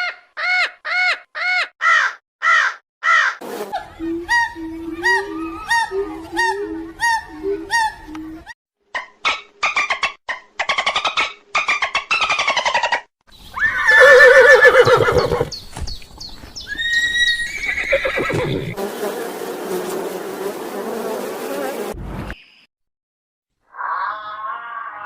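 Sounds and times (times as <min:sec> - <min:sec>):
bee buzzing: 0:03.4 - 0:08.4, 0:18.4 - 0:22.0
horse whinnying: 0:13.6 - 0:15.5, 0:16.7 - 0:18.8.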